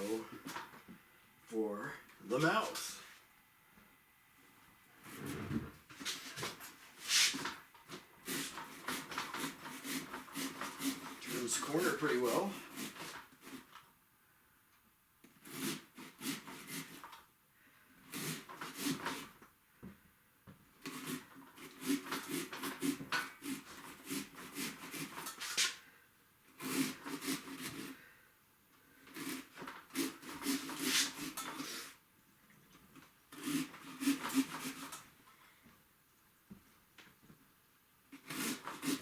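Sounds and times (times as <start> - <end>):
hand saw rasping through pumpkin: 8.2 - 13.8, 15.3 - 17.1, 18.0 - 19.3, 20.8 - 25.8, 26.5 - 28.1, 29.0 - 32.0, 33.3 - 35.0, 38.1 - 39.0.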